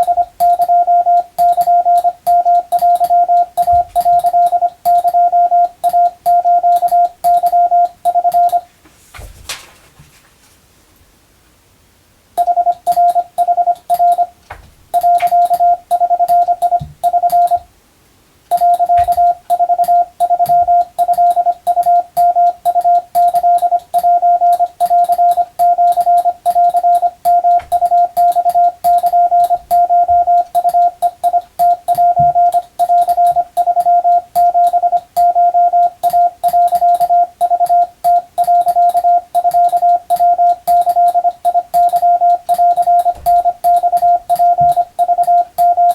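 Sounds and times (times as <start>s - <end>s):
morse code beeps: 0.0s - 8.7s, 12.4s - 17.7s, 18.5s - 45.9s
faint keying clicks: 18.5s - 45.9s.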